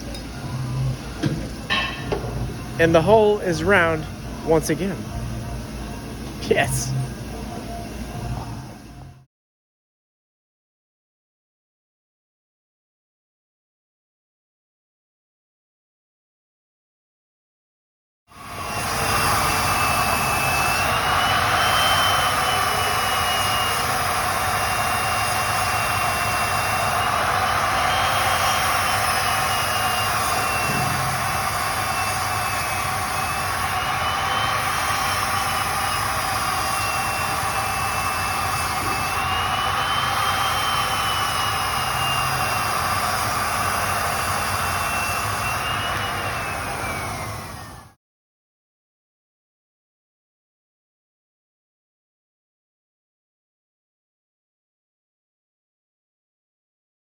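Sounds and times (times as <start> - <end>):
machine hiss with high whine: 18.4 - 48.0.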